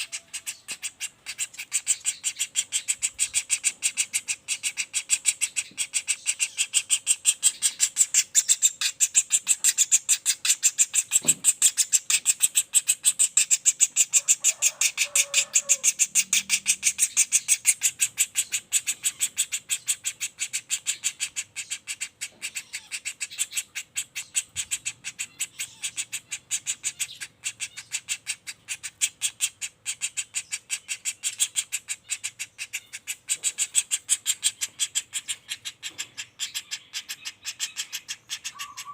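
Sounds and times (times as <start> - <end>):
woodpecker rolling call: 0.0 - 38.9.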